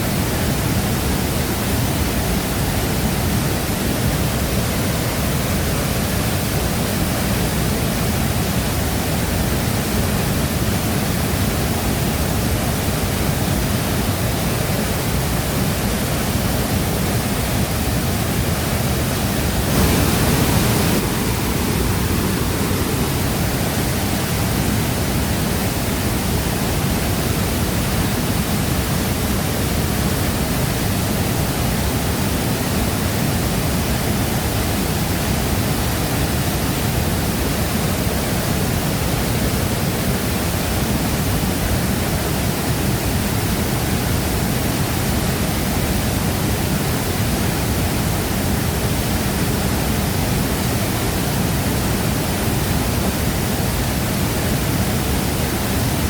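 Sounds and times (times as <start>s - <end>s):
waterfall pouring: 19.0s - 25.0s.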